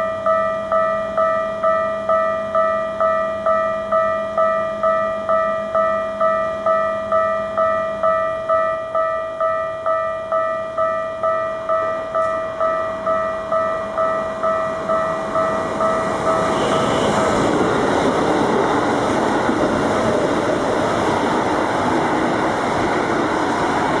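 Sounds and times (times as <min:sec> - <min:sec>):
level crossing bell dinging: 0:00.0 - 0:17.1
train wheel and rail noise: 0:00.0 - 0:24.0.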